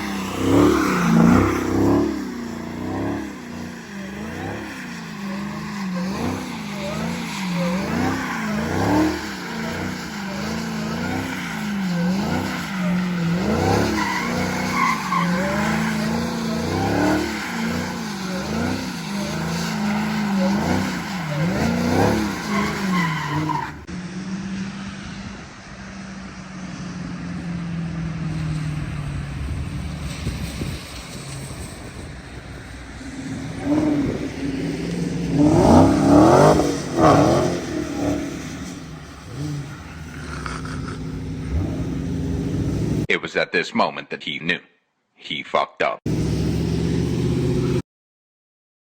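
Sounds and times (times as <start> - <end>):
tyre squeal on wet road: 0.0 - 23.9, 29.9 - 43.1
car engine revving: 0.0 - 25.6, 31.1 - 43.1, 46.1 - 47.8.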